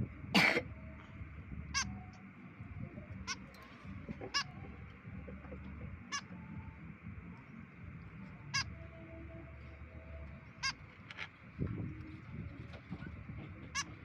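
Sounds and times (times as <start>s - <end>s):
low background rumble: 0.0s - 14.0s
bird giving sharp calls: 3.2s - 6.5s, 10.4s - 11.3s.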